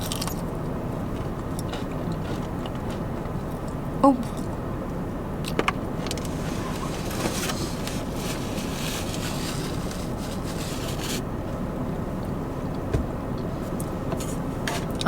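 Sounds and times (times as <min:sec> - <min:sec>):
low background rumble: 0:00.0 - 0:15.0
faint rustling: 0:06.2 - 0:11.2.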